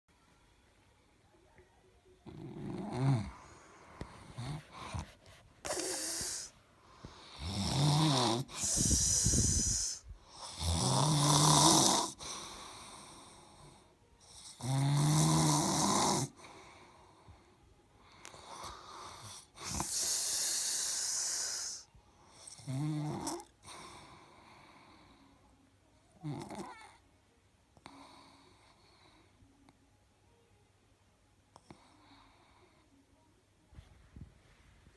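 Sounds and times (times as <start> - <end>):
person snoring: 2.3 - 16.5, 18.3 - 24.0.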